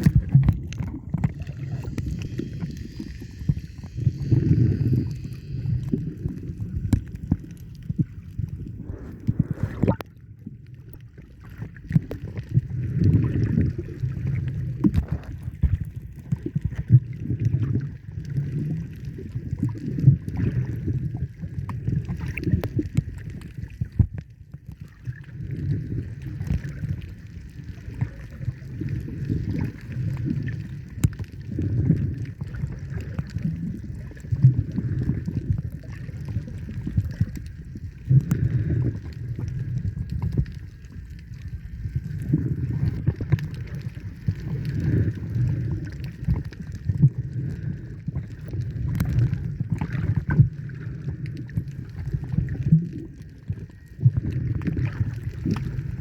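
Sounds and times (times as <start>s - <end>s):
faint steady hum: 0.0s - 56.0s
water sloshing and gurgling: 0.0s - 56.0s.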